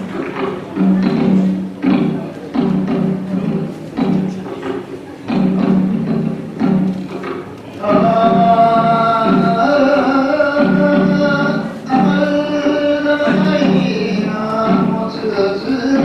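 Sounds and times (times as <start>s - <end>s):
voices singing folk song: 7.8s - 16.0s.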